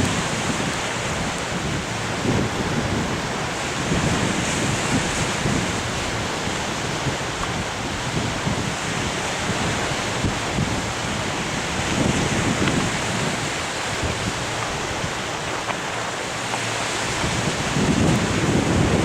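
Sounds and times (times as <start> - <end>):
sea surf: 0.0 - 19.0
wind buffeting microphone: 0.0 - 19.0.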